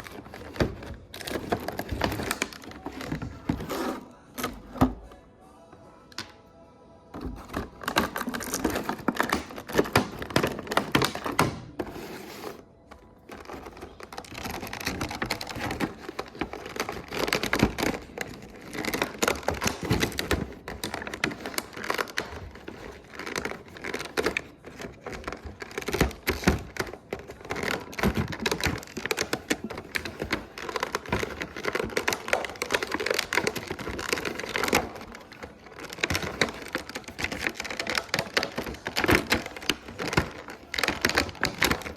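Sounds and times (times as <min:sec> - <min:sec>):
handling plastic and cardboard packaging: 0:00.0 - 0:05.2, 0:07.1 - 0:41.9.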